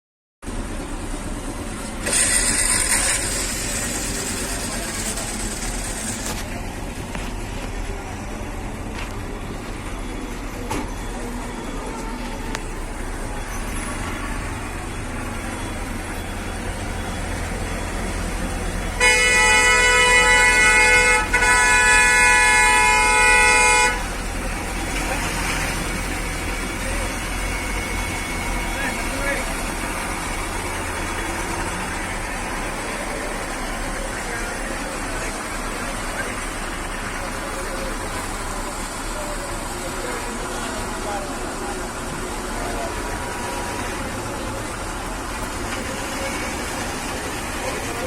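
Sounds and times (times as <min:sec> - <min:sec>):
low vehicle rumble: 0:00.4 - 0:48.0
bus horn blasts: 0:11.4 - 0:12.8, 0:18.9 - 0:24.4.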